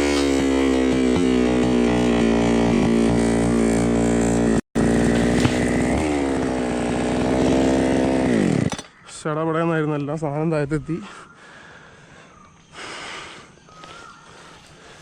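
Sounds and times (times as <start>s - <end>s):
chainsaw cutting wood: 0.0s - 8.9s.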